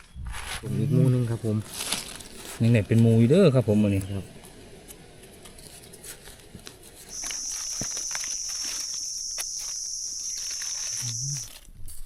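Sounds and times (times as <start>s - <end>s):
footsteps in leaf litter: 1.4s - 3.0s, 5.6s - 11.7s
insect buzzing high-pitched: 7.1s - 11.6s.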